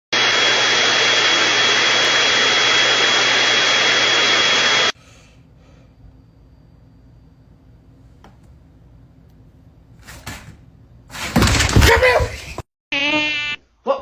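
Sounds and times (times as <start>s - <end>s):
constant high whine: 0.2s - 9.9s.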